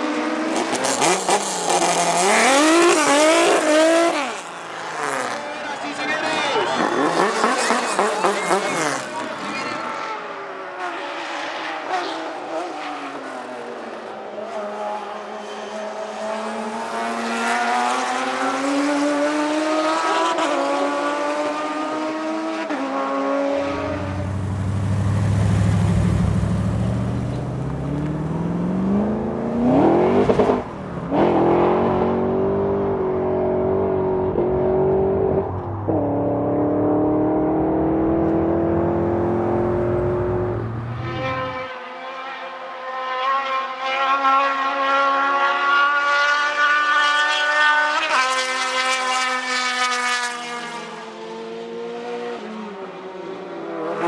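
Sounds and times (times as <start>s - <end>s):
racing car accelerating through gears: 0.0s - 54.0s
deep car engine revving: 0.5s - 5.4s, 23.4s - 41.6s.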